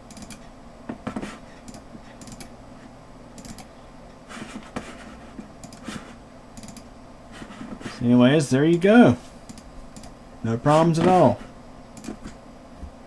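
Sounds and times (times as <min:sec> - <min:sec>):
computer mouse clicks: 0:00.0 - 0:00.5, 0:01.1 - 0:02.5, 0:03.4 - 0:03.7, 0:05.6 - 0:05.9, 0:06.6 - 0:06.9, 0:09.5 - 0:10.2, 0:12.0 - 0:12.4
computer hum: 0:00.0 - 0:13.0.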